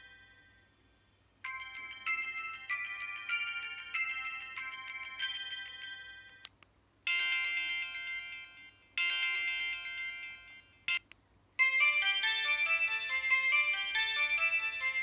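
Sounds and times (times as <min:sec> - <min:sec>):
melodic ringtone: 0:00.0 - 0:00.7, 0:01.4 - 0:06.5, 0:07.1 - 0:11.0, 0:11.6 - 0:15.0.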